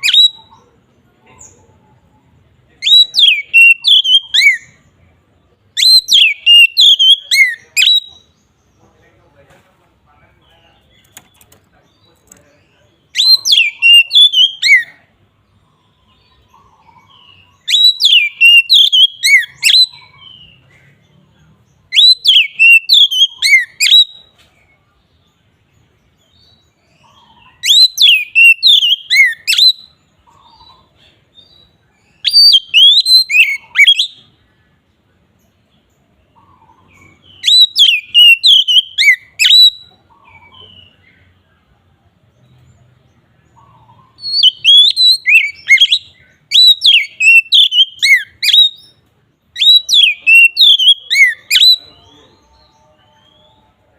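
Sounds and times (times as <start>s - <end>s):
bird singing whistled phrases: 0.0s - 0.6s, 2.8s - 4.8s, 5.8s - 8.4s, 13.1s - 15.0s, 17.0s - 20.6s, 21.9s - 24.4s, 27.1s - 30.8s, 31.4s - 34.4s, 36.7s - 41.0s, 43.9s - 52.3s.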